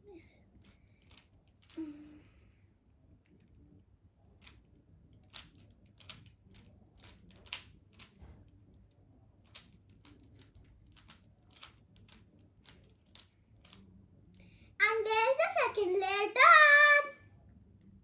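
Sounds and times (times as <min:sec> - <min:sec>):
rubik's cube clicking: 0:00.6 - 0:01.8, 0:04.4 - 0:08.2, 0:09.4 - 0:14.0.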